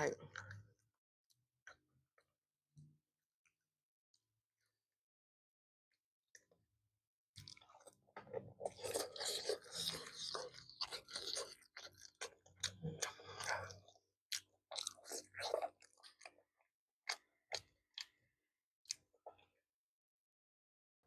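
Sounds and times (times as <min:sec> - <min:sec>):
person chewing food: 0:07.4 - 0:18.3.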